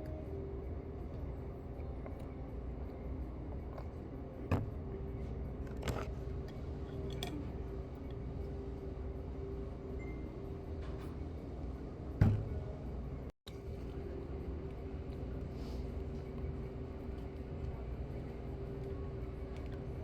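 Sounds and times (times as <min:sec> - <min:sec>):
restaurant room noise: 0:00.0 - 0:20.0
utensils clinking against bowl: 0:05.8 - 0:07.6.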